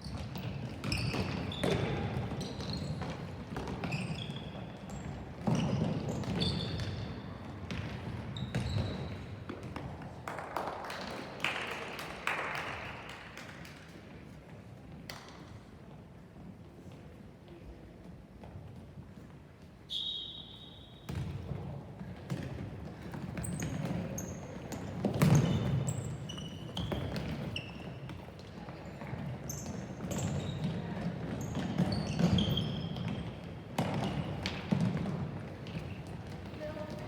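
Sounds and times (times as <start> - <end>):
sneakers squeaking on floor: 0.0 - 9.9, 18.4 - 37.0
hum of players and spectators: 0.0 - 37.0.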